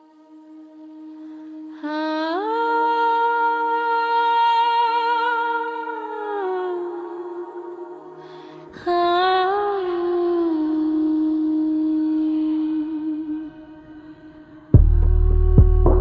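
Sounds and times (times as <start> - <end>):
person humming: 14.7 - 16.0.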